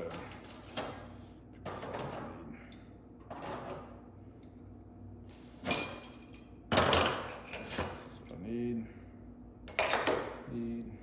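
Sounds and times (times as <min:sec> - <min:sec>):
metal tools clattering: 0:09.7 - 0:10.3.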